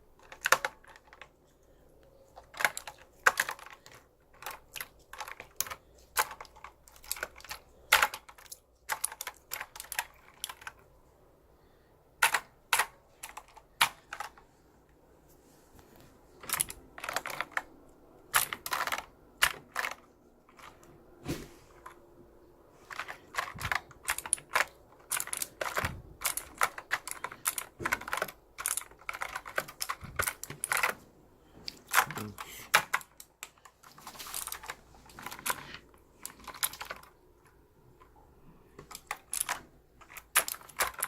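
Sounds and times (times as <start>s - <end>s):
keyboard keys clacking: 22.9s - 31.0s.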